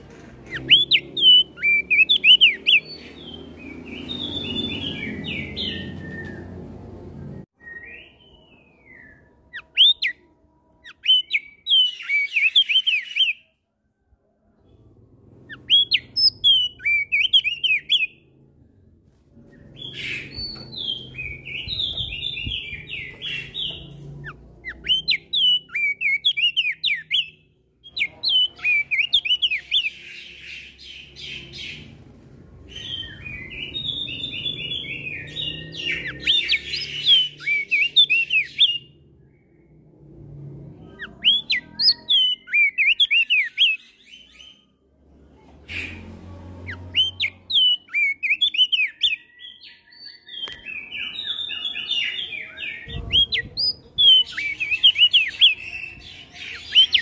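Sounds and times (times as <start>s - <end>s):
bird chattering whistled song: 0.4s - 6.5s, 7.7s - 10.2s, 10.8s - 13.5s, 15.5s - 18.2s, 19.8s - 31.4s, 32.8s - 38.9s, 41.0s - 44.4s, 46.9s - 57.0s
other birds calling: 50.3s - 57.0s.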